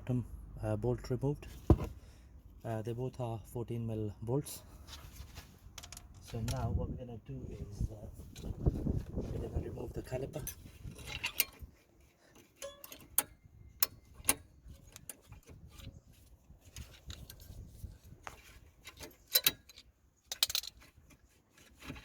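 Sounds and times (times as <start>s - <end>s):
metallic clicks and knocks: 5.7s - 6.7s, 10.3s - 11.7s, 12.3s - 15.9s, 18.3s - 21.2s.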